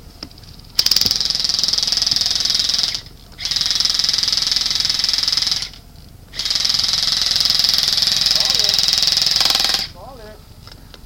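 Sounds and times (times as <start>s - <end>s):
airsoft rifle firing bursts: 0.8s - 5.8s, 6.4s - 9.9s.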